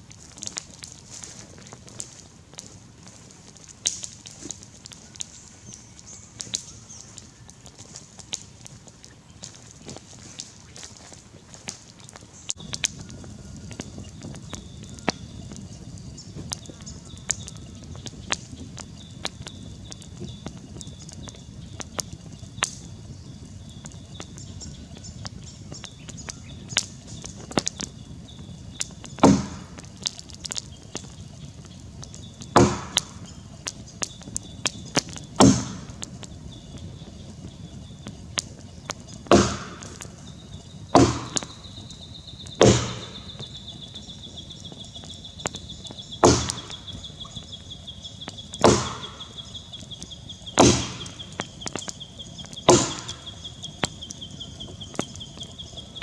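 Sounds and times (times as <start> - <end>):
small clicks: 0.0 - 28.0
axe chopping into log: 29.2 - 29.8, 32.6 - 33.2, 35.4 - 36.0, 39.3 - 40.1, 41.0 - 41.5, 42.6 - 43.3, 46.2 - 46.8, 48.6 - 49.3, 50.6 - 51.2, 52.7 - 53.2.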